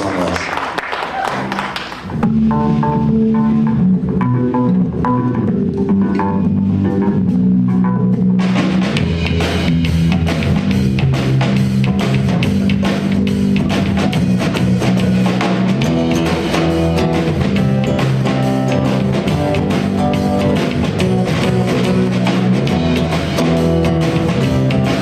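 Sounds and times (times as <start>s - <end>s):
electric bass line: 1.4s - 25.0s
drum kit and cymbals: 5.8s - 25.0s.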